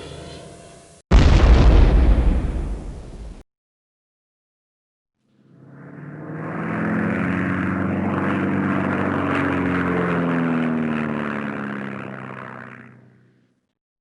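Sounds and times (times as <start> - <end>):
propeller airplane flying past: 5.2 - 13.8.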